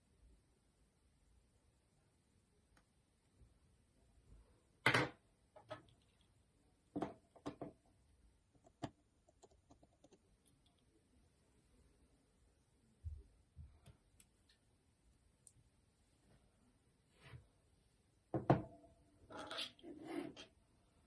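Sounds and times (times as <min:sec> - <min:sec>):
phone parts clicking and knocking: 0:08.6 - 0:10.2.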